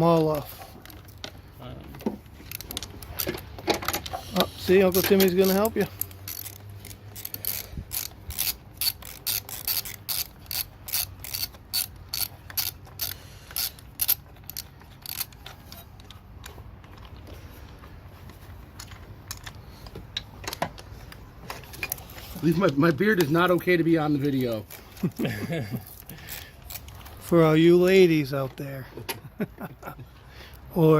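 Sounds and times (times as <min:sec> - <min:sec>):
socket ratchet clicking: 0:02.4 - 0:16.5, 0:25.9 - 0:27.2.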